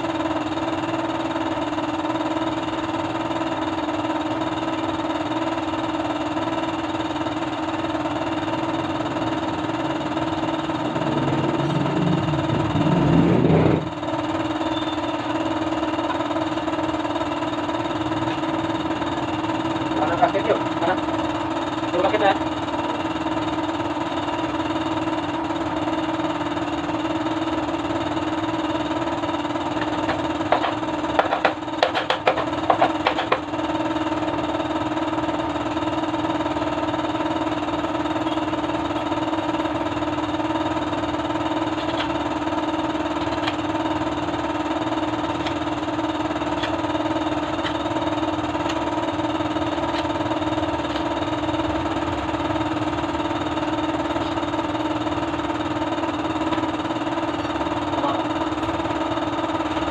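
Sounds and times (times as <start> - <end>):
motorcycle engine idling: 0.0 - 59.9
sharp clicks and knocks: 29.8 - 33.5.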